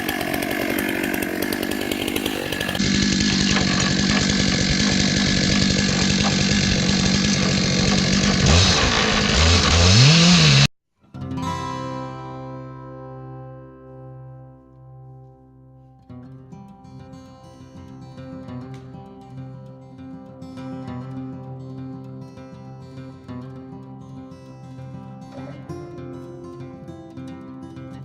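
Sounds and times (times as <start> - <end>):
chainsaw cutting a log: 0.0 - 10.7
acoustic guitar music: 11.0 - 28.0.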